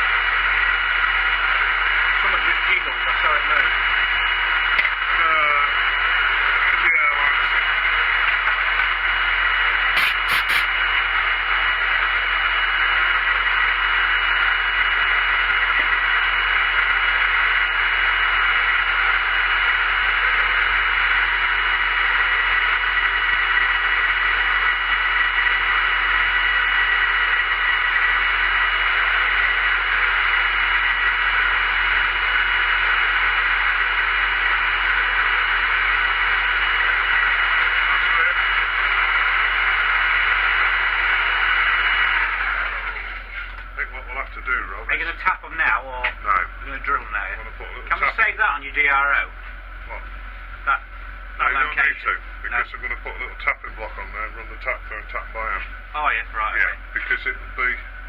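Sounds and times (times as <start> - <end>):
milling machine whining: 0.0 - 58.0.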